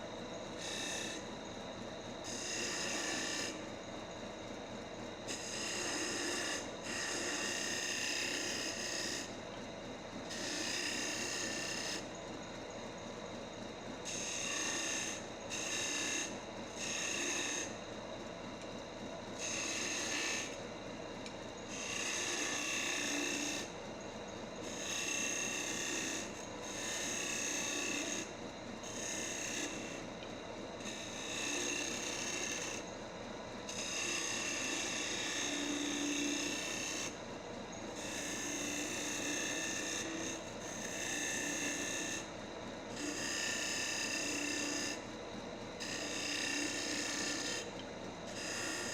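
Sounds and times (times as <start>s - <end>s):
turning tool cutting wood: 0.6s - 1.2s, 2.2s - 3.6s, 5.3s - 9.3s, 10.3s - 12.1s, 14.0s - 17.8s, 19.4s - 20.6s, 21.7s - 23.7s, 24.7s - 28.3s, 28.9s - 30.1s, 30.8s - 32.8s, 33.7s - 37.1s, 38.0s - 42.2s, 42.9s - 45.0s, 45.8s - 47.7s, 48.3s - 48.9s
wood lathe running: 0.6s - 1.3s, 2.2s - 3.7s, 5.3s - 9.4s, 10.3s - 12.2s, 14.0s - 17.9s, 19.3s - 20.7s, 21.6s - 23.8s, 24.6s - 28.3s, 28.9s - 30.2s, 30.8s - 32.9s, 33.7s - 37.1s, 38.0s - 42.3s, 42.9s - 45.1s, 45.8s - 48.9s.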